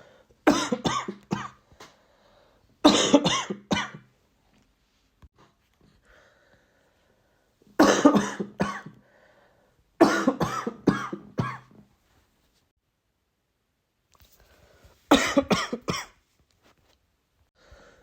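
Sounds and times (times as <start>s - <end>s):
person coughing: 0.5s - 2.0s, 2.8s - 4.1s, 7.8s - 9.0s, 10.0s - 11.8s, 15.1s - 16.2s
breath in: 1.6s - 2.7s, 5.4s - 7.5s, 9.0s - 9.8s, 17.6s - 18.0s.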